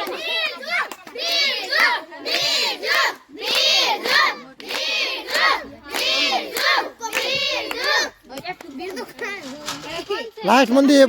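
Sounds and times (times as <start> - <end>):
children shouting a cheer: 0.0 - 8.2.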